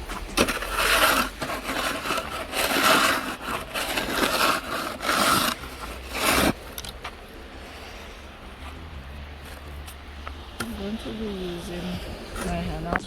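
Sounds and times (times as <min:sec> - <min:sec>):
snow shovel scraping snow: 0:00.0 - 0:06.9.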